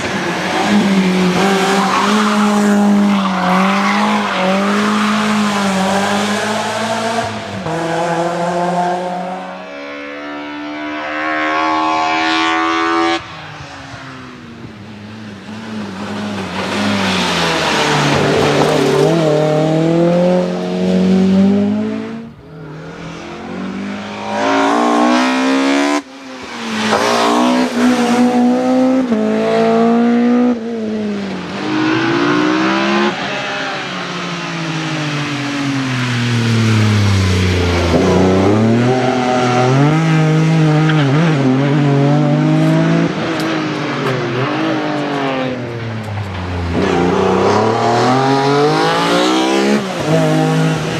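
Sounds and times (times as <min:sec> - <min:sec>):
car engine revving: 0:14.6 - 0:50.9.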